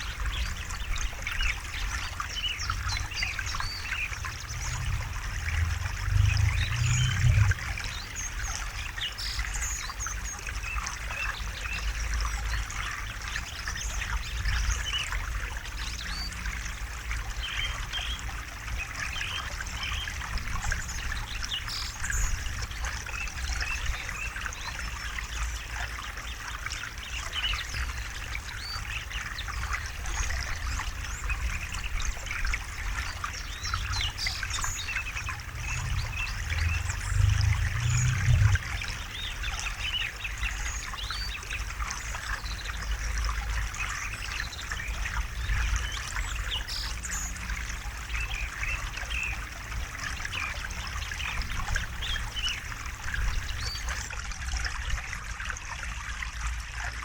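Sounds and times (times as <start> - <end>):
river water flowing: 0.0 - 57.0
low rumble: 4.2 - 8.0, 33.7 - 39.7
birds chirping: 32.8 - 41.3.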